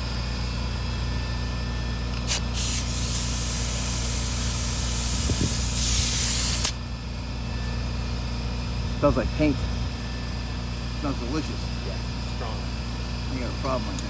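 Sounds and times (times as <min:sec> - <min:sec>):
spray gun hissing: 0:02.3 - 0:06.8.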